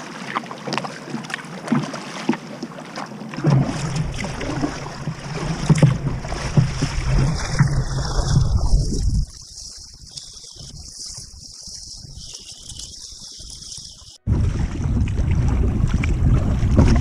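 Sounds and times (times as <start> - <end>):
water splashing against hull: 0.0 - 17.0
wind buffeting microphone: 3.7 - 9.4, 14.3 - 17.0.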